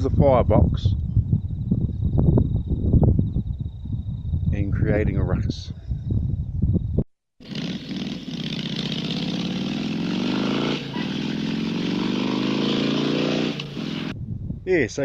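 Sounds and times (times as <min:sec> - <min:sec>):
vehicle engine accelerating: 0:07.4 - 0:14.1.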